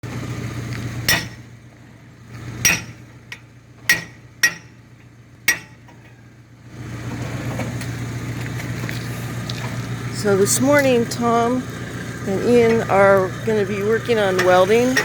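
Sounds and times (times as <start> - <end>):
steady low hum: 0.0 - 15.0
metal struck on steel: 1.1 - 1.5, 2.6 - 4.8, 5.5 - 5.9.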